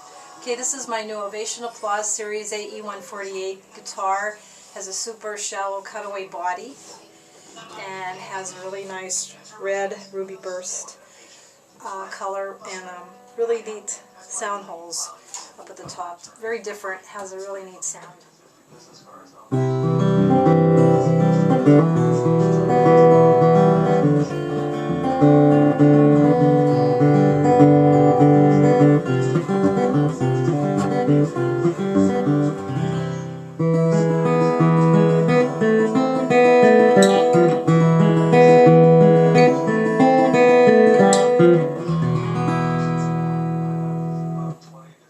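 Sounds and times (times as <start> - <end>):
acoustic guitar chords: 19.5 - 44.9.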